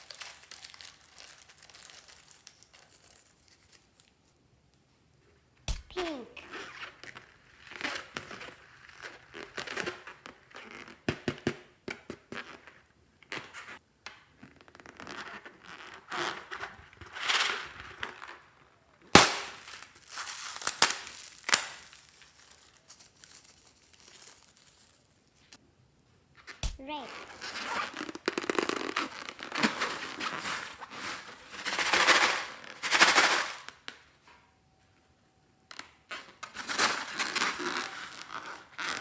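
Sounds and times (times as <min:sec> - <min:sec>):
slime squishing and crinkling: 0:00.0 - 0:04.3, 0:05.9 - 0:11.1, 0:14.5 - 0:25.6, 0:26.4 - 0:33.0, 0:35.8 - 0:39.0.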